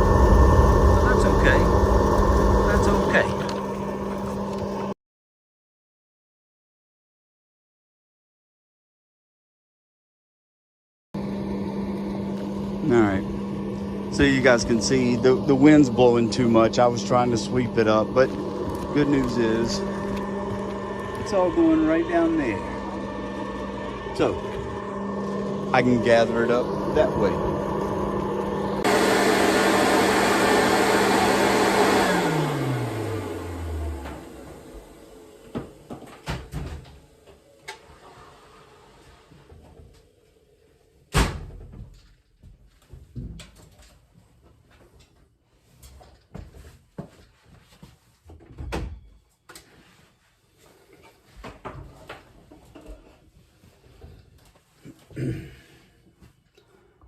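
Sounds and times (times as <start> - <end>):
low rumble: 0.0 - 4.8, 12.7 - 29.7
electric motor with rushing air: 0.0 - 5.0, 11.2 - 35.7.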